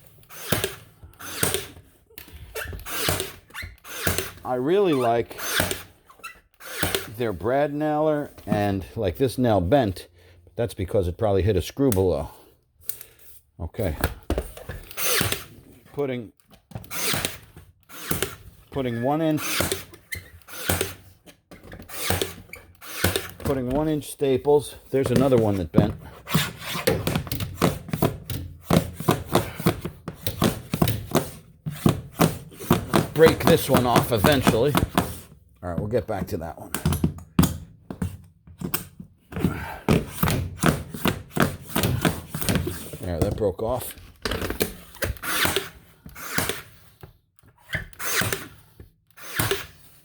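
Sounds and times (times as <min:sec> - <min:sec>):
stapler whirring bursts: 0:00.2 - 0:01.8, 0:02.7 - 0:04.4, 0:06.6 - 0:07.1, 0:14.8 - 0:15.6, 0:16.8 - 0:18.5, 0:19.4 - 0:21.1, 0:21.9 - 0:23.4
stapler firing into plywood: 0:02.9 - 0:04.4.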